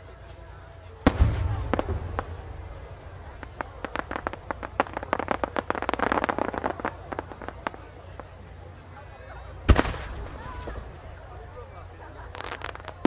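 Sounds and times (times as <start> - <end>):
firework shell burst rumbling: 1.0 - 8.4, 9.6 - 11.3
fireworks crackling pops: 1.0 - 8.7, 9.6 - 11.4, 12.1 - 13.0.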